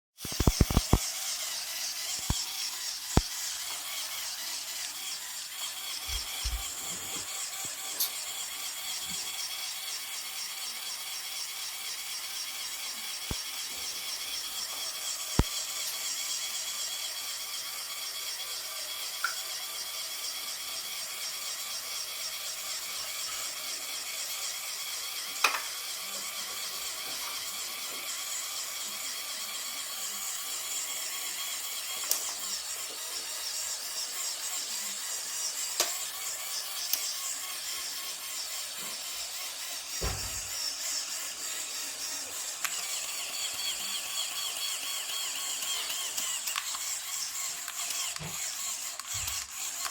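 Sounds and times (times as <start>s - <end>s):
sharp clicks: 0.2s - 1.0s
small electric motor whirring: 0.2s - 49.9s.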